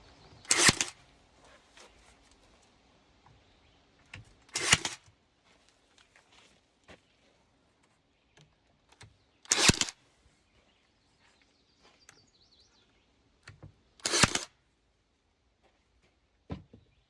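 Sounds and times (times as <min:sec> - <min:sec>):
nail gun firing: 0:00.5 - 0:01.0, 0:04.5 - 0:05.0, 0:09.5 - 0:10.0, 0:14.0 - 0:14.5
faint bird chirping: 0:06.9 - 0:13.5.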